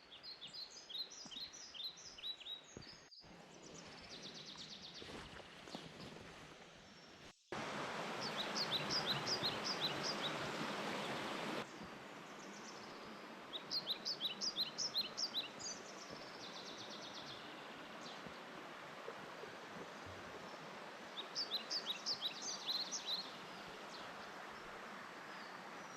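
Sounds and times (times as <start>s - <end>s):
mountain stream rushing: 7.5s - 25.9s.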